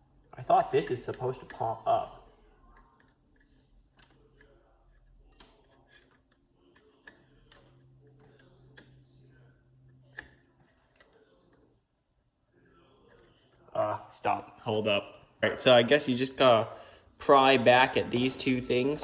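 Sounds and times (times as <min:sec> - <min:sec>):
faint clicks and taps: 0:00.4 - 0:11.8.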